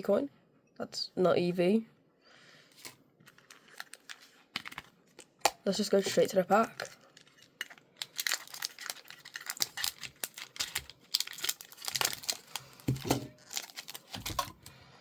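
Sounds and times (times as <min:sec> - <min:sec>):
foil wrapper crinkling: 0:02.8 - 0:14.7.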